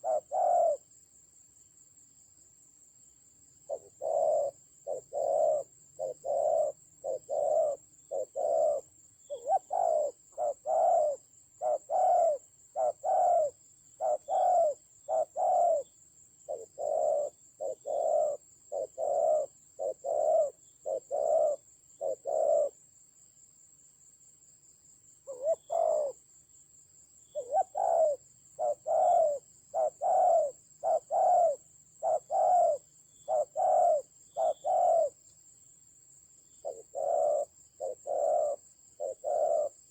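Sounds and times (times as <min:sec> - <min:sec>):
doves cooing: 0:00.0 - 0:00.8, 0:03.7 - 0:15.9, 0:16.5 - 0:22.8, 0:25.3 - 0:26.2, 0:27.3 - 0:35.2, 0:36.6 - 0:39.9.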